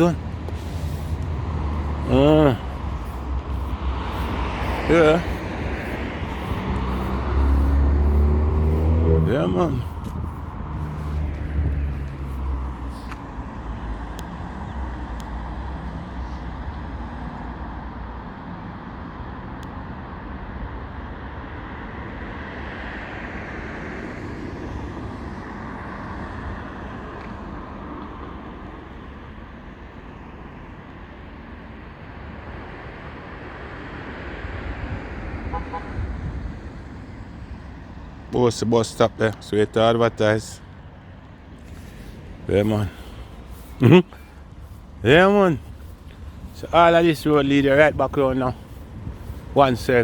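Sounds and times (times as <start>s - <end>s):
vehicle passing with low rumble: 0.0s - 50.0s
vehicle tyre and engine noise: 0.0s - 50.0s.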